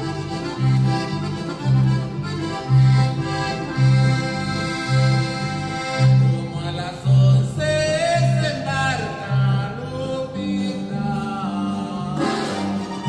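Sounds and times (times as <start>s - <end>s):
accordion melody: 0.0s - 13.0s
electric bass line: 0.0s - 13.0s
person singing: 6.1s - 13.0s.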